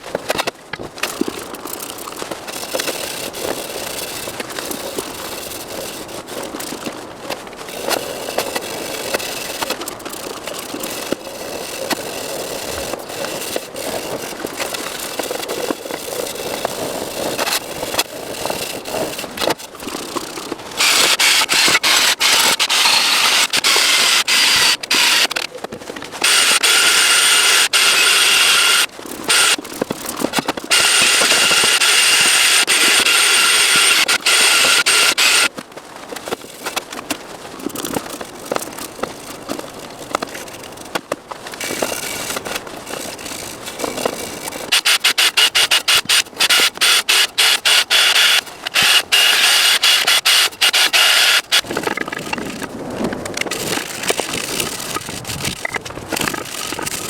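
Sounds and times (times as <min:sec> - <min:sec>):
tool scraping with clicks: 0:00.0 - 0:57.0
loud hissing tool with whine: 0:20.8 - 0:25.4, 0:26.2 - 0:29.6, 0:30.7 - 0:35.5.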